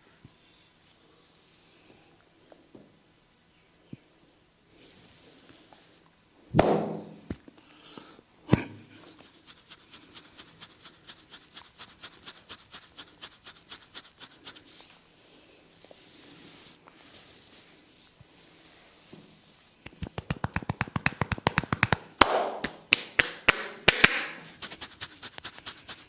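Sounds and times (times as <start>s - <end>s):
hand slaps on head: 6.6s - 7.2s, 19.8s - 24.4s
fingers rustling in hair: 9.0s - 22.1s, 24.4s - 26.0s.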